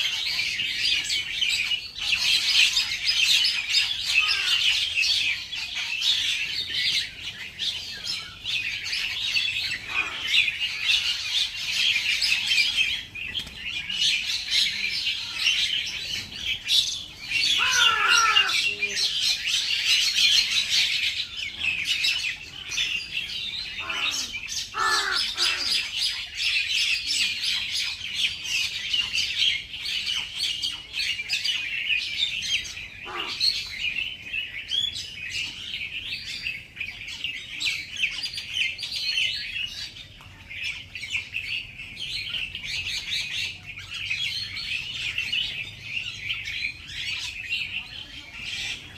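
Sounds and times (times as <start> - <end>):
longer falling bird calls: 0.0 - 28.1, 28.8 - 40.2
flock of small birds chirping: 0.0 - 48.9.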